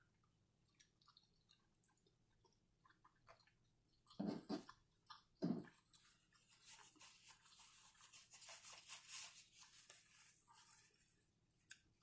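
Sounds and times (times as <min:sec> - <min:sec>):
person chewing crunchy food: 0:00.0 - 0:08.1.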